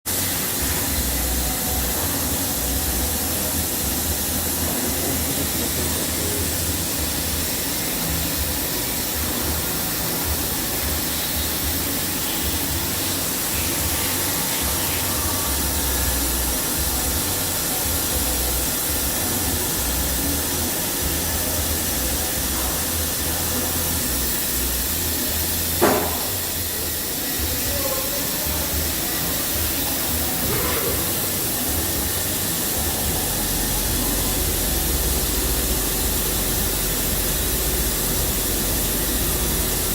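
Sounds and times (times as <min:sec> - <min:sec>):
grinding machine hiss: 0:00.1 - 0:39.9
low machine hum: 0:00.1 - 0:39.9
sharp knock: 0:25.8 - 0:26.3.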